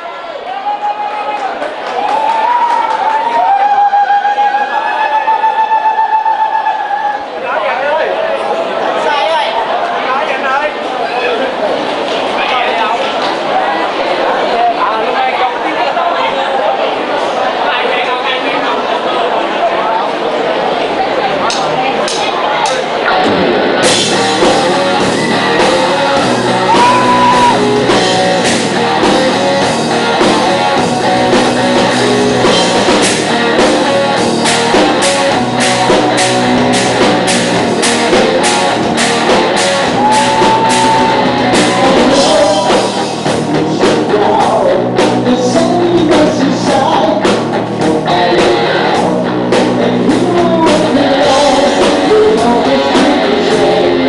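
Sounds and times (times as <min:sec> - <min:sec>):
drums: 0:20.9 - 0:54.0
rock band playing live: 0:21.6 - 0:54.0
person singing: 0:23.1 - 0:54.0.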